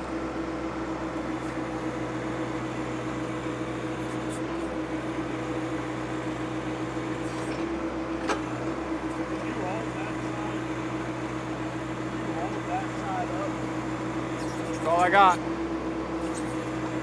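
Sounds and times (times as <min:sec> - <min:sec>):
tractor engine running: 0:00.0 - 0:17.0.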